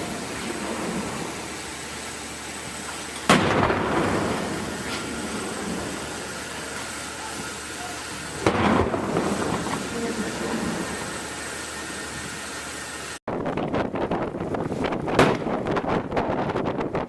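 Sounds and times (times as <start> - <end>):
steady background noise: 0.0 - 16.2
rolling rumble: 0.0 - 17.0
gun shot boom: 3.3 - 4.6, 8.4 - 9.8, 15.1 - 15.6.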